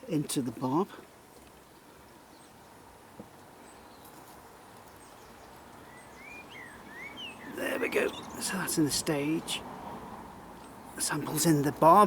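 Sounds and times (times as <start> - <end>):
steady background hiss: 0.0 - 12.0
bird chirps: 4.9 - 9.5.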